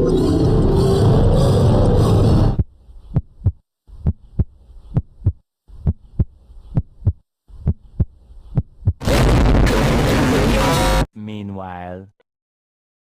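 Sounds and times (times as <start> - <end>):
heartbeat thumps: 2.6 - 9.0.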